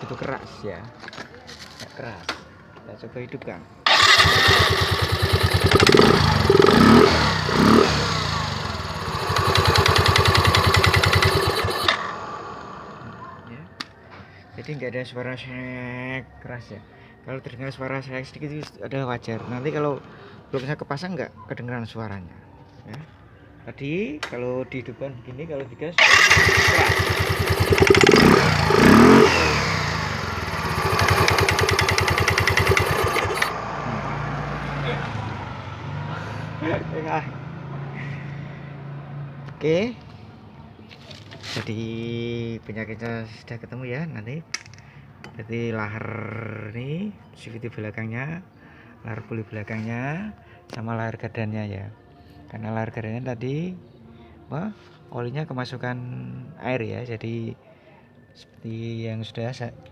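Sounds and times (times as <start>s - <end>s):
scooter engine revving: 3.9s - 13.4s, 26.0s - 36.6s.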